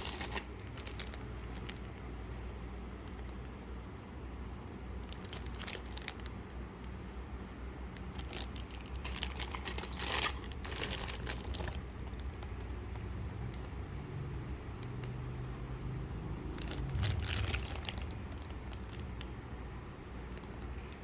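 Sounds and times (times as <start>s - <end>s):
packaging crinkling and rustling: 0.0s - 2.1s, 5.0s - 6.9s, 7.9s - 13.9s, 16.4s - 21.0s.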